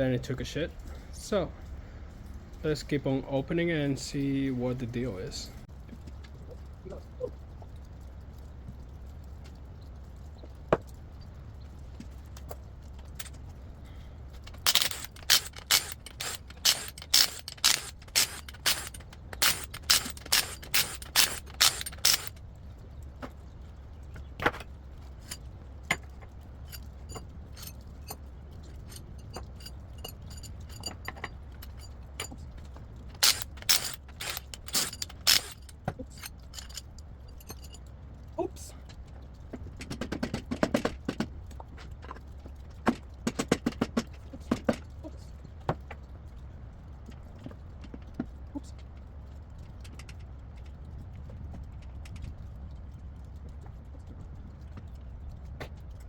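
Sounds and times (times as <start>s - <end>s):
steady low hum: 11.3s - 38.8s
sharp metallic clicks: 14.5s - 22.4s, 33.2s - 37.8s.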